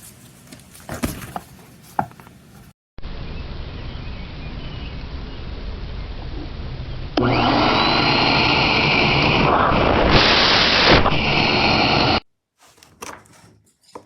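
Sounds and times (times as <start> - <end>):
shop vacuum running: 4.7 - 12.2.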